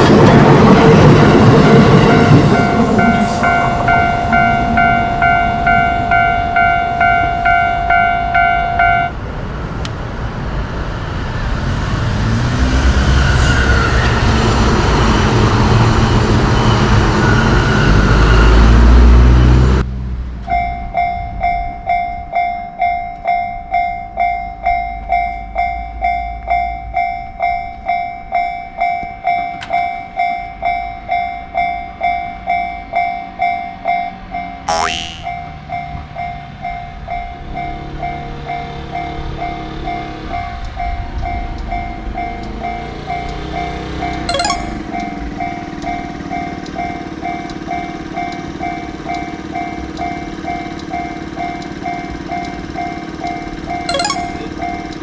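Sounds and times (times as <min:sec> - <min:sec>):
crossing warning bell dinging: 0:00.2 - 0:09.2.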